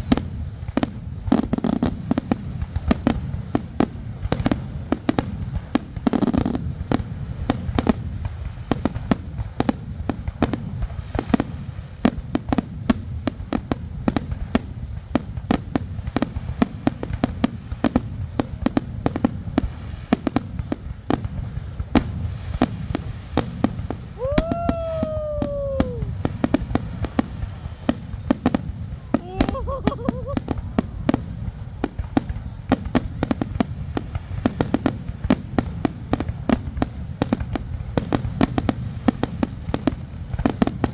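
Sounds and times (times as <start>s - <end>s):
fireworks bangs and crackles: 0.0s - 40.9s
firework whistle: 24.2s - 26.2s.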